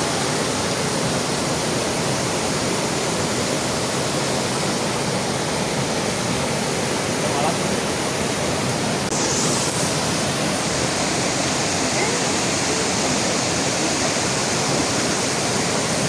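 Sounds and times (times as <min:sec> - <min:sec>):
river rushing: 0:00.0 - 0:16.0
heavy rain falling: 0:07.1 - 0:16.0.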